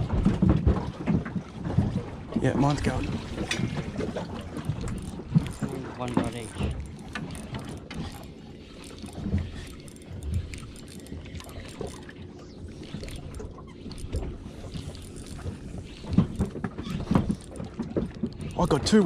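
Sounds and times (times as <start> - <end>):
soft knocks against hull: 0.0 - 8.2.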